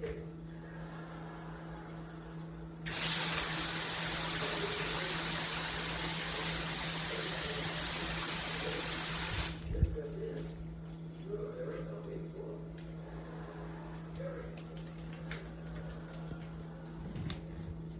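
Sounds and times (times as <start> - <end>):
water spraying from shower head: 2.8 - 9.7.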